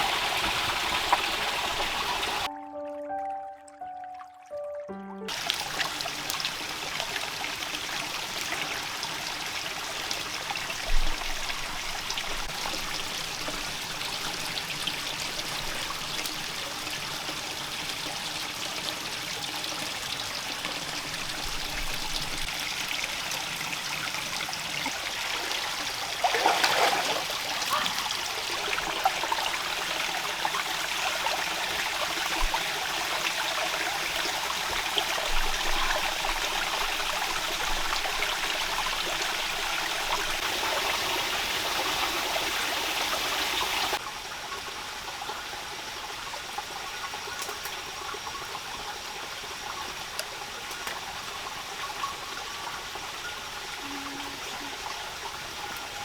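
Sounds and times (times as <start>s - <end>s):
running trickling water: 0.0s - 56.0s
steady rain: 28.2s - 56.0s.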